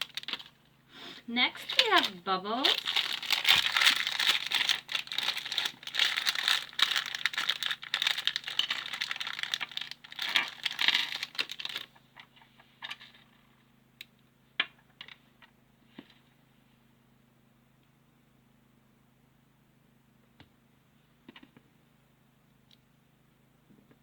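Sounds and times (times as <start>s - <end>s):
packaging crinkling: 0.0s - 0.6s, 1.4s - 12.0s.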